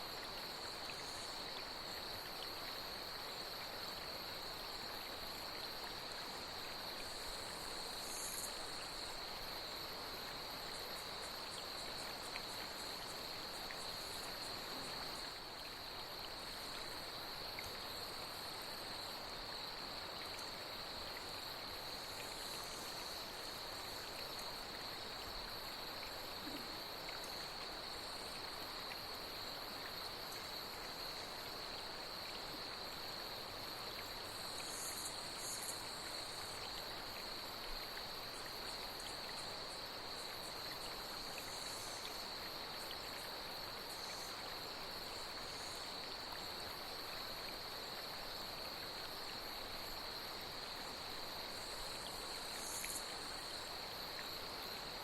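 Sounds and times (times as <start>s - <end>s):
flowing water: 0.0s - 55.0s
insects chirring: 0.0s - 55.0s
high insect chirps: 6.7s - 9.8s, 34.2s - 36.9s, 51.4s - 54.8s.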